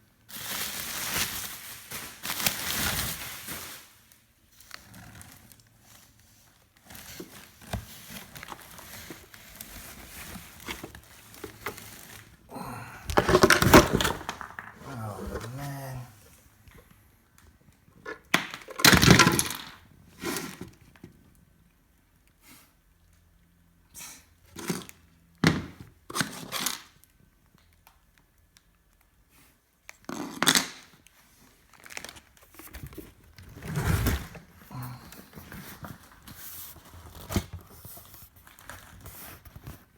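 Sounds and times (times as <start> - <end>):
packaging rustling: 6.5 - 16.4, 31.6 - 39.9.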